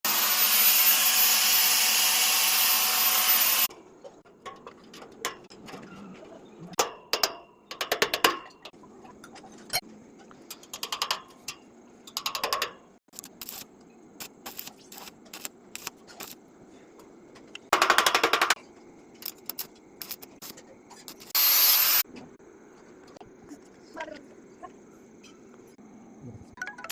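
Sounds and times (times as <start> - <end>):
power tool running: 0.1 - 3.7, 21.4 - 22.0
metal clicks and taps: 10.4 - 13.3.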